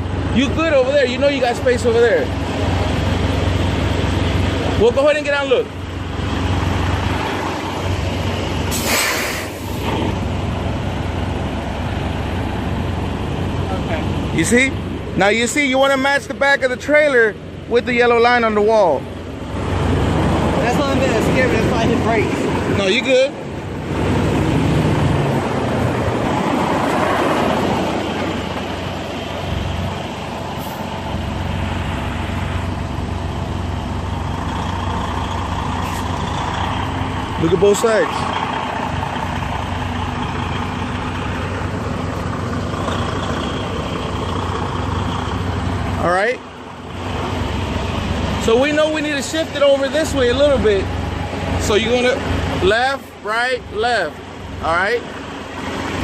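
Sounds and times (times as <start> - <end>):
diesel engine idling: 0.0 - 56.0
compressed air hiss: 8.7 - 9.9.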